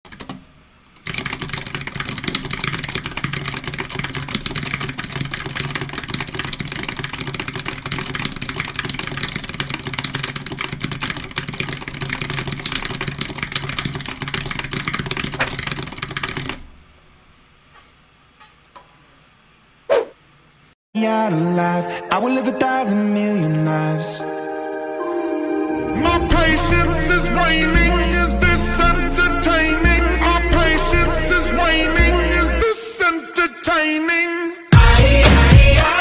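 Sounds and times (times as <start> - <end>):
fast typing on computer keyboard: 0.1 - 0.4, 1.0 - 16.7.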